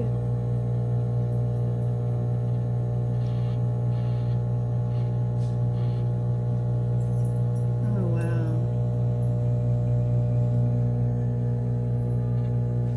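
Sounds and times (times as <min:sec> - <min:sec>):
microwave oven humming: 0:00.0 - 0:12.9.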